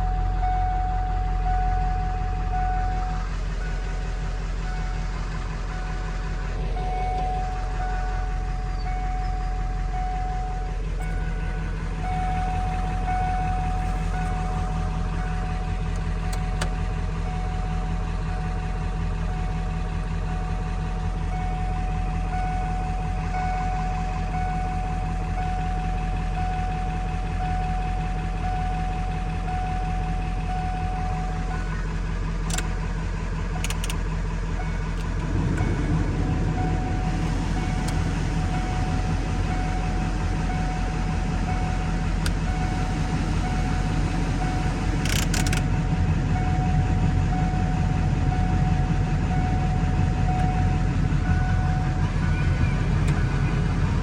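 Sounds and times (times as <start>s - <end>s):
vehicle engine idling: 0.0s - 54.0s
brief clicks: 45.0s - 45.7s.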